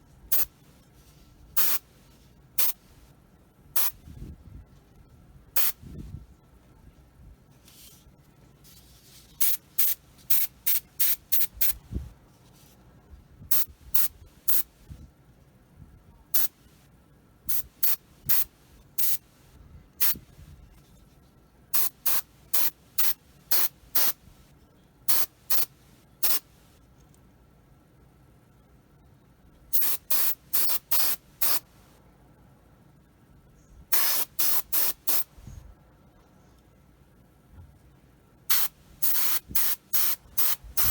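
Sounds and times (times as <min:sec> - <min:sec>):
airbrush spraying hiss: 0:01.6 - 0:01.9, 0:02.6 - 0:03.0, 0:03.8 - 0:04.0, 0:05.6 - 0:06.0, 0:09.0 - 0:12.0, 0:13.5 - 0:14.7, 0:17.5 - 0:19.3, 0:20.0 - 0:20.3, 0:21.8 - 0:24.3, 0:25.1 - 0:26.6, 0:29.8 - 0:31.8, 0:33.9 - 0:35.6, 0:38.5 - 0:40.9.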